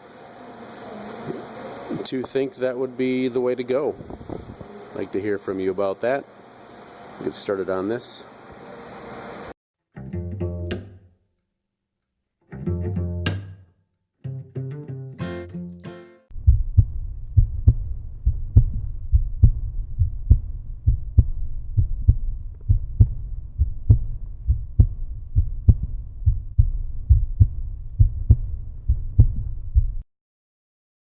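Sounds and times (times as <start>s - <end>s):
plucked bass phrase: 10.0s - 11.0s, 12.5s - 13.6s, 14.2s - 19.7s
deep muffled beat: 16.3s - 30.0s.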